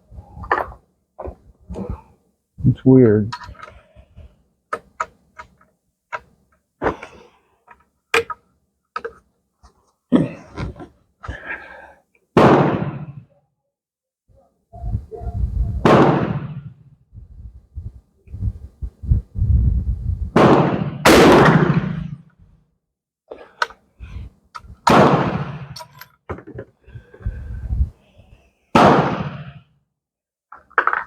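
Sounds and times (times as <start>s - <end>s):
gunshots: 12.4s - 13.2s, 15.8s - 16.7s, 20.4s - 22.2s, 24.9s - 25.8s, 28.8s - 29.6s.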